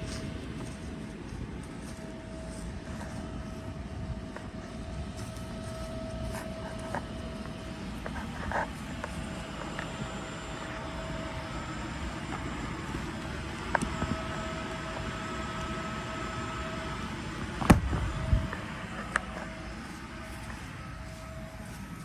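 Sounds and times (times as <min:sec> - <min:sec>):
blower motor whirring hum: 0:00.0 - 0:22.0
sharp knocks: 0:17.6 - 0:18.1.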